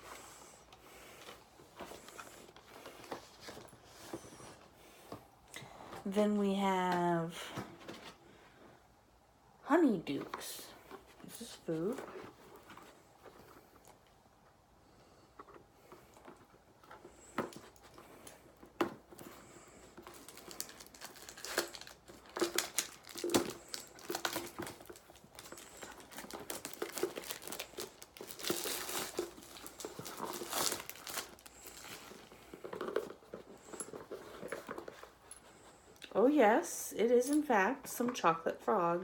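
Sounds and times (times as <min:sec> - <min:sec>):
packaging crinkling and tearing: 0:19.9 - 0:34.9.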